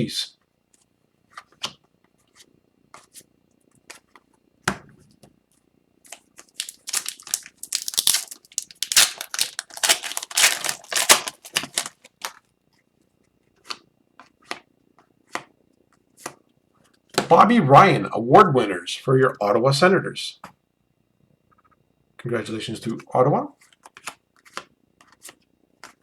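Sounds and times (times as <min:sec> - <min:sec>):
trading cards rattling and rustling: 0:06.5 - 0:12.4.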